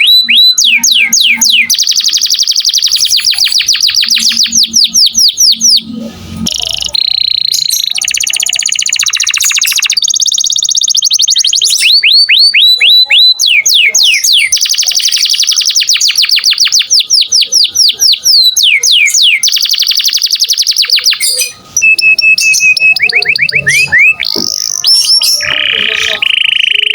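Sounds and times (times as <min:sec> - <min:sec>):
canary singing: 0:00.0 - 0:26.9.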